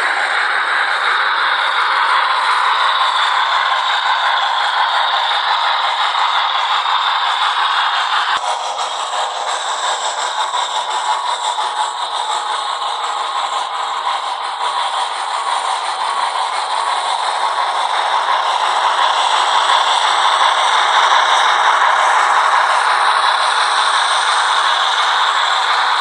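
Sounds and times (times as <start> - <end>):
model train rattling on track: 0.0 - 26.0
steam locomotive sound from speaker: 0.0 - 26.0.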